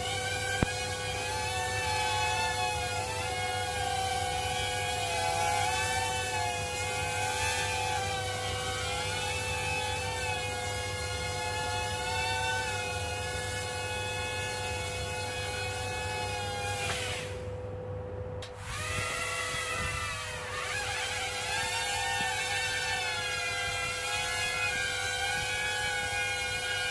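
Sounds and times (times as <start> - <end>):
drone propellers whining: 12.6 - 17.6, 18.4 - 26.9.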